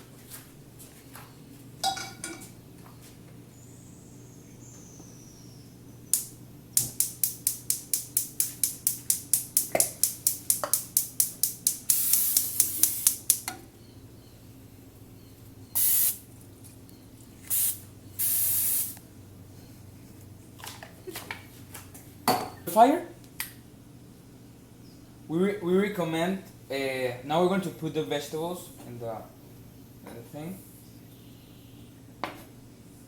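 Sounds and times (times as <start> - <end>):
cooking oil spray hissing: 6.2 - 13.5, 15.8 - 16.3, 17.4 - 19.0.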